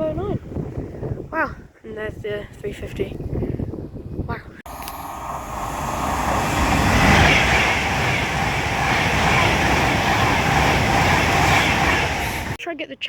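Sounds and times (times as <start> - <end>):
train passing: 4.7 - 12.6
wheels hissing on rails: 4.7 - 12.6.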